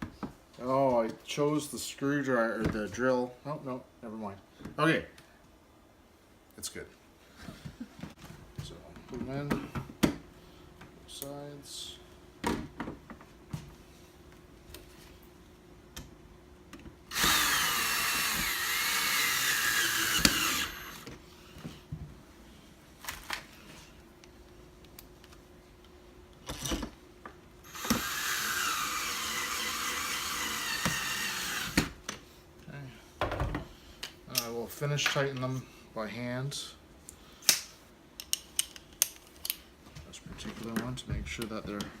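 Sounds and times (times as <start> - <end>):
power drill driving screws: 17.1 - 21.1, 27.7 - 32.0.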